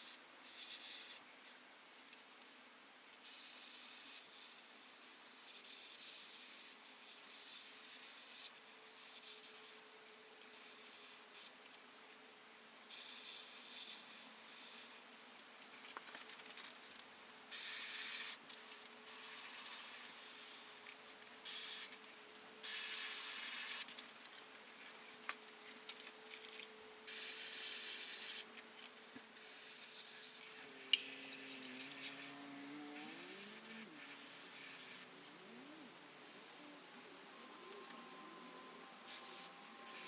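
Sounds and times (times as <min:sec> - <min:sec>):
faint steady hum: 0:00.0 - 0:40.0
airbrush spraying hiss: 0:22.6 - 0:23.8, 0:27.1 - 0:32.3, 0:33.0 - 0:35.0, 0:39.1 - 0:40.0.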